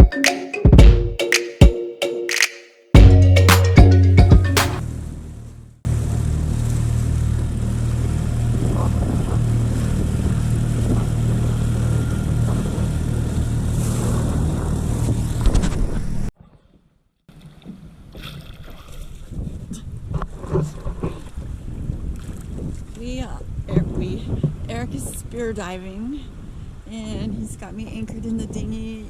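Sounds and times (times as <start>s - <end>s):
wind: 4.8s - 29.0s
boat engine running: 5.9s - 16.1s.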